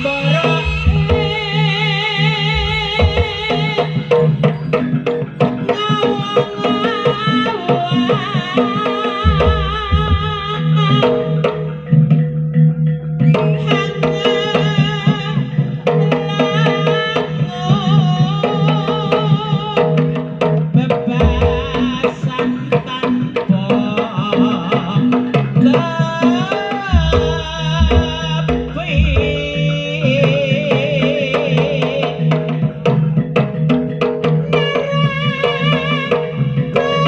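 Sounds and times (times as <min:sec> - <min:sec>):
hand drums playing: 0:00.0 - 0:37.0
deep booming drum strokes: 0:00.6 - 0:01.7, 0:02.5 - 0:04.6
vibrato reed trumpet melody: 0:05.7 - 0:11.7.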